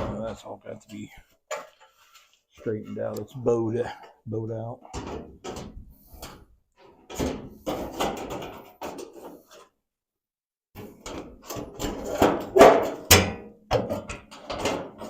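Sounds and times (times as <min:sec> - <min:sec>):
sheet metal panels clunking: 0:04.8 - 0:09.6, 0:10.8 - 0:15.0.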